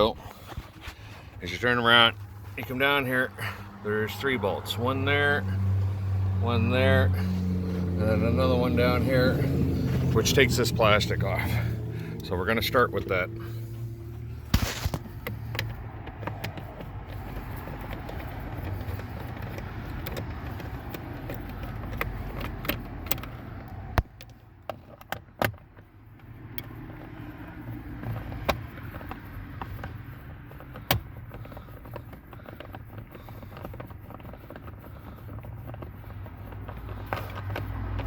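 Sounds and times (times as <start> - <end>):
hand tools clicking and knocking: 9.2 - 38.0.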